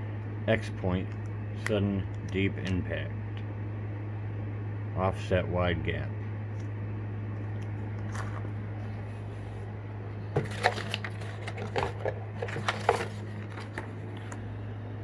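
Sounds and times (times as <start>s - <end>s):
steady low hum: 0.0s - 15.0s
plastic packaging crinkling: 7.5s - 9.6s, 10.3s - 14.4s.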